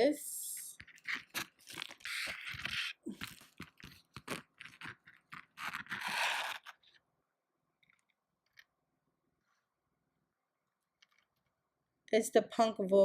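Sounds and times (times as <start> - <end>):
packaging rustling: 0.8 - 7.0.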